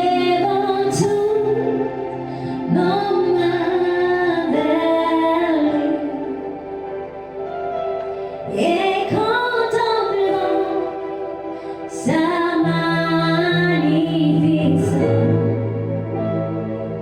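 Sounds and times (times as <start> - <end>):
woman singing worship song: 0.0 - 6.6, 8.4 - 15.8
sustained instrumental chords: 0.0 - 17.0
low bass notes: 14.3 - 17.0.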